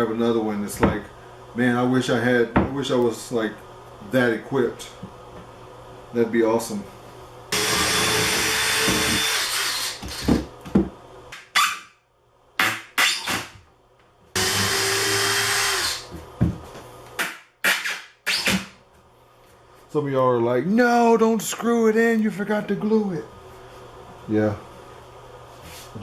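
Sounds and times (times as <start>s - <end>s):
drill driving screws: 7.5s - 10.4s, 12.6s - 13.5s, 14.4s - 16.1s, 17.2s - 18.7s.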